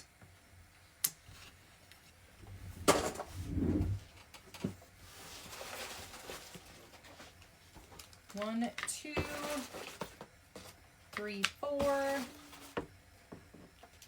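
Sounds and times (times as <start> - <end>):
soft rustle: 2.4 - 4.1.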